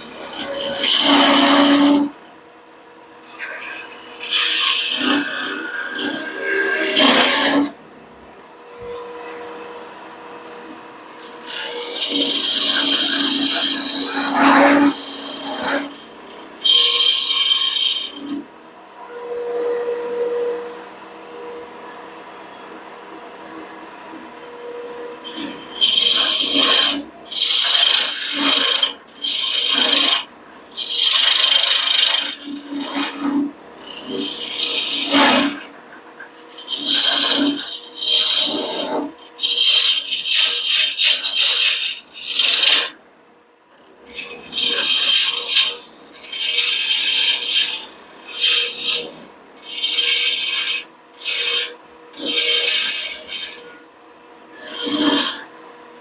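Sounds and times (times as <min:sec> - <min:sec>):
turning tool scraping wood: 0:00.0 - 0:02.1, 0:03.0 - 0:07.8, 0:11.2 - 0:18.4, 0:25.2 - 0:43.0, 0:44.1 - 0:53.8, 0:54.6 - 0:55.5
wood lathe humming: 0:00.0 - 0:02.2, 0:03.0 - 0:07.8, 0:11.1 - 0:18.5, 0:25.2 - 0:43.0, 0:43.9 - 0:53.8, 0:54.6 - 0:55.6.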